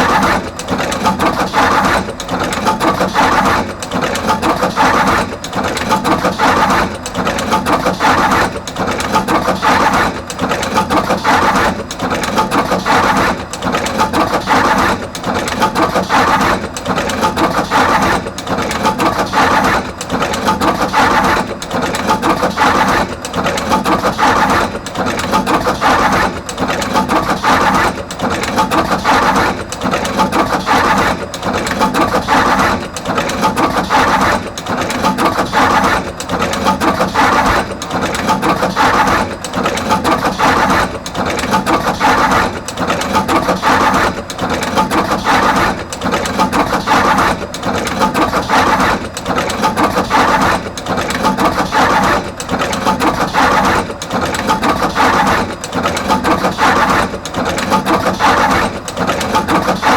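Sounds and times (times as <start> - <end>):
wire crimping machine cycling: 10.2 - 59.9.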